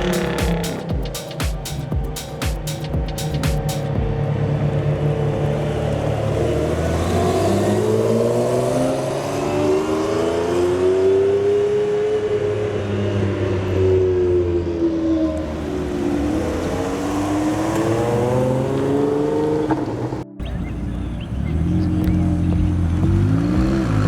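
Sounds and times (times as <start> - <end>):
sports car engine revving: 15.0 - 24.0.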